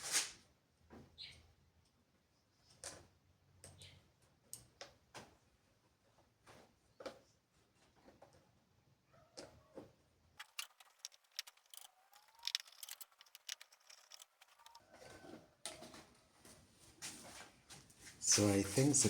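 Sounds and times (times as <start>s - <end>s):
clicks and taps of handled parts: 10.4s - 14.8s.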